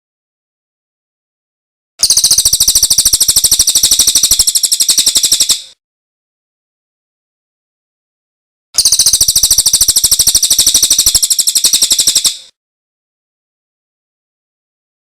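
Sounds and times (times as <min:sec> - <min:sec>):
songbird trill: 0:02.0 - 0:05.8, 0:08.8 - 0:12.5.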